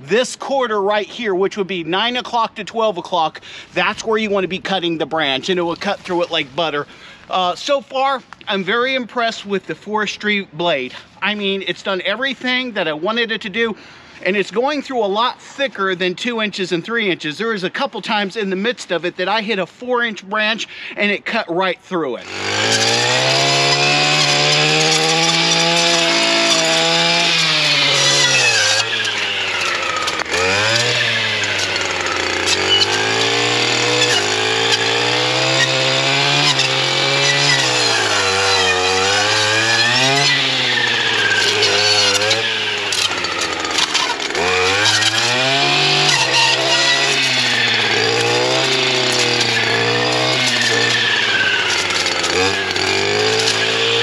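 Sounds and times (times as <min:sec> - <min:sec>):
brush cutter engine at high revs: 0:22.2 - 0:54.0.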